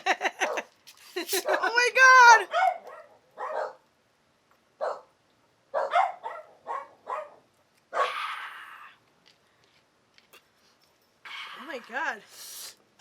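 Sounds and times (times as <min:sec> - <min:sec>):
dogs barking: 0:00.4 - 0:00.7, 0:02.4 - 0:03.8, 0:04.8 - 0:05.1, 0:05.7 - 0:08.2.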